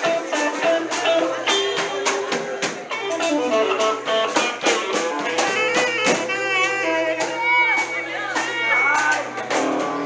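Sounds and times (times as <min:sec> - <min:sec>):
blues guitar notes: 0:00.0 - 0:10.0
drum kit steady beat: 0:00.0 - 0:10.0.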